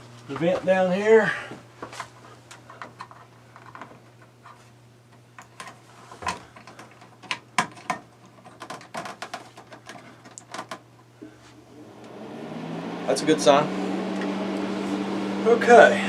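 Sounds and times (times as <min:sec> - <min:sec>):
faint steady hum: 0:00.0 - 0:16.0
plastic parts clicking and tapping: 0:05.4 - 0:10.8.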